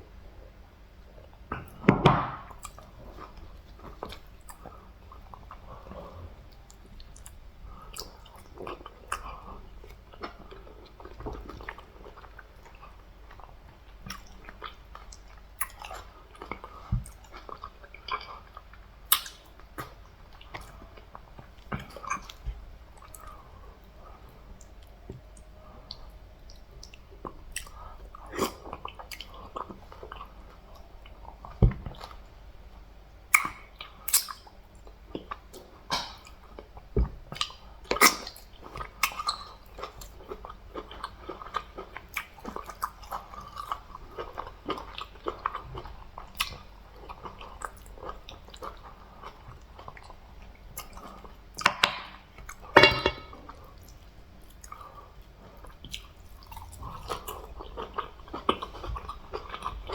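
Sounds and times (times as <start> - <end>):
chewing with lip smacks: 2.5 - 32.3, 33.3 - 52.8, 53.4 - 59.9.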